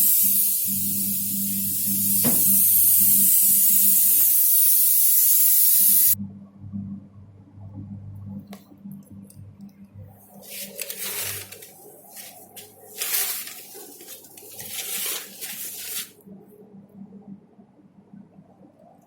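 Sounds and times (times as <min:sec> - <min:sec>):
spray paint hissing: 0:00.0 - 0:06.2, 0:12.2 - 0:16.2.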